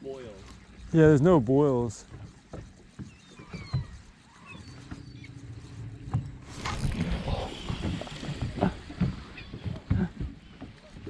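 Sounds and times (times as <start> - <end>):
high falling bird calls: 2.9 - 6.0.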